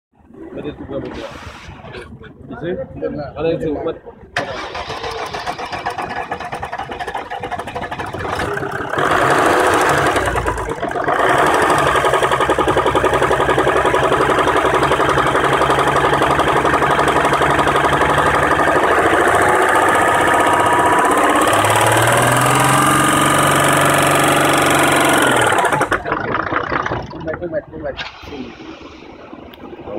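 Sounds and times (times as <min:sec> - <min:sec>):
diesel engine running with a knock: 0:05.3 - 0:27.6.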